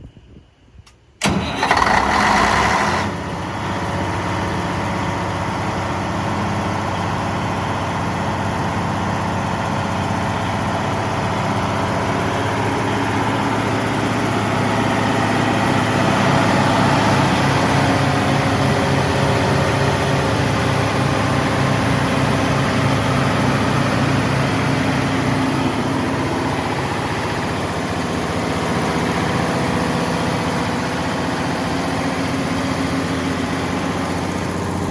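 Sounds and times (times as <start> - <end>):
generator engine running: 1.2 - 34.9.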